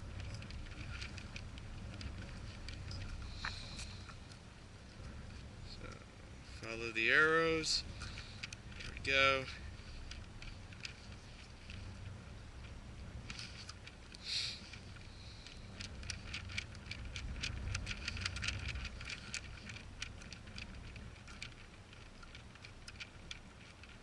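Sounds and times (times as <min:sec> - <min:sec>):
rustle: 0:00.0 - 0:24.0
wind rumbling on microphone: 0:00.0 - 0:24.0
small plastic clicks: 0:13.2 - 0:24.0.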